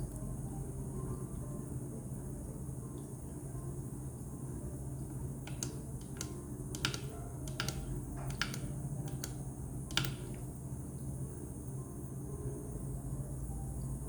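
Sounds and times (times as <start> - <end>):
humidifier humming: 0.0 - 14.0
sharp clicks: 5.5 - 10.5.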